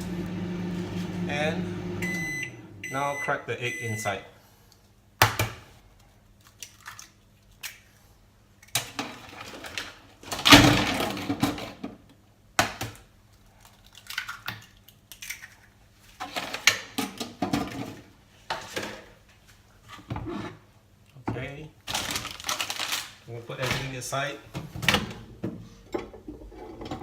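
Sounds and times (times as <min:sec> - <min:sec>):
eggs cracking against container: 0:13.6 - 0:15.8.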